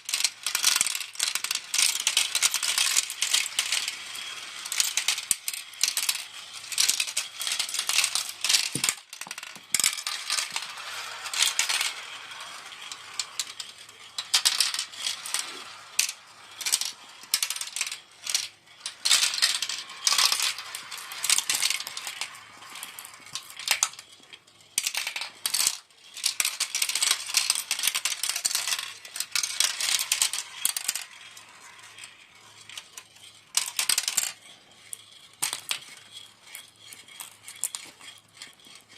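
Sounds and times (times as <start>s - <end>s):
marbles clattering down track: 0.0s - 38.9s.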